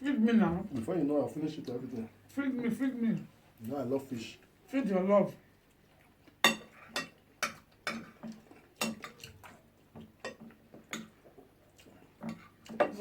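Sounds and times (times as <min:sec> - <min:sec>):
cutlery clicking on a plate: 0:06.4 - 0:09.5, 0:10.2 - 0:11.2, 0:12.2 - 0:13.0.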